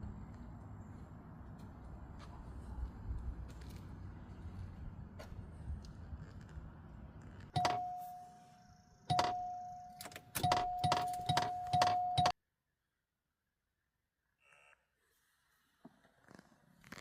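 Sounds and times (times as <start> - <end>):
steady ringing tone: 7.6 - 12.4.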